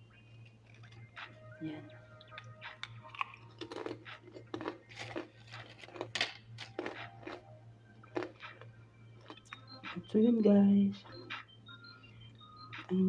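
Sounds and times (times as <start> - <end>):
potato chips crunching: 2.8 - 7.4.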